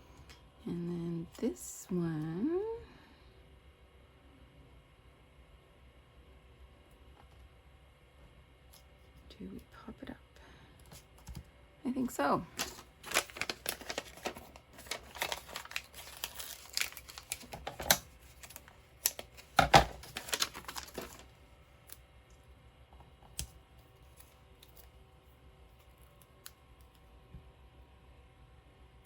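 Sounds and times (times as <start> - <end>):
paper handling clicks and rustles: 12.5 - 22.0.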